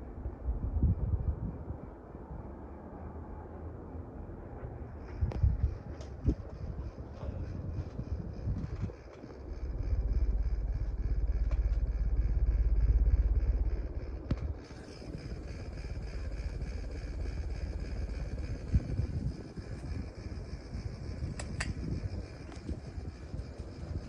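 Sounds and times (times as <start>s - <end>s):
ceiling fan humming: 3.6s - 24.0s
loud low rumble: 4.4s - 24.0s
faint clicks: 5.1s - 24.0s.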